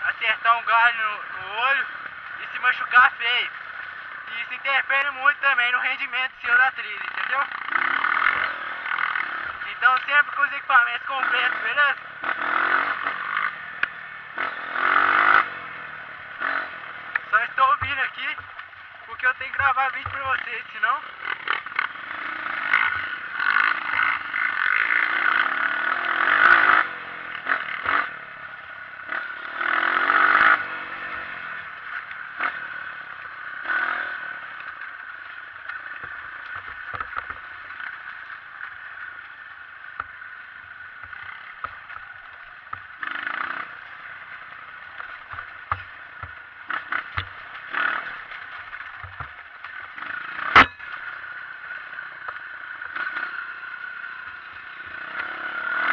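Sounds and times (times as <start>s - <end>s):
motorcycle engine revving: 0.0s - 55.9s
bike clattering over rough ground: 16.4s - 26.8s, 34.4s - 55.9s.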